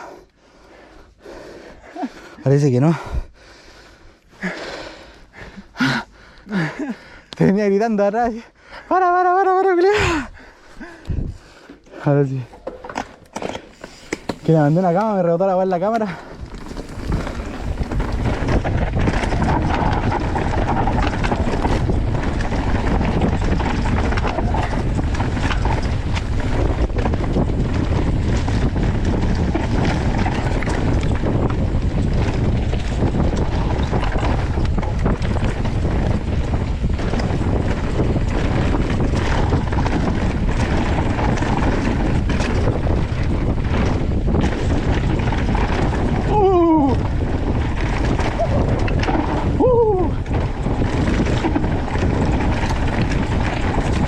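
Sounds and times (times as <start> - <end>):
wind buffeting microphone: 9.8 - 54.0
tyres rumbling on trail: 10.0 - 54.0
bike knocks and rattles: 12.4 - 54.0.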